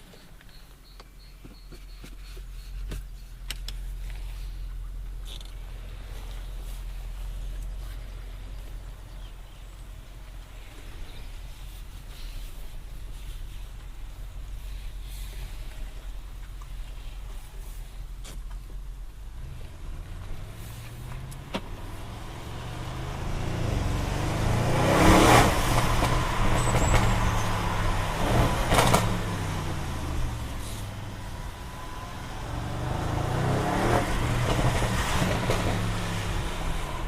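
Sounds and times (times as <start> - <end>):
car engine accelerating hard: 19.3 - 37.0.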